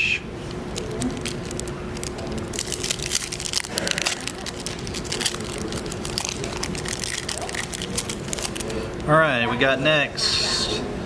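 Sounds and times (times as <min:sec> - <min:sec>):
foil wrapper crinkling and tearing: 0:00.7 - 0:09.1.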